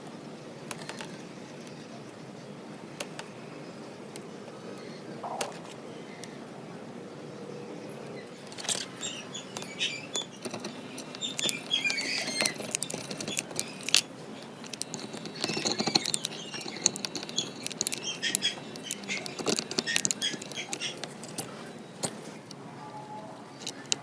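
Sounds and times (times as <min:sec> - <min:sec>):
hard objects clicking and tapping: 0:08.5 - 0:22.2.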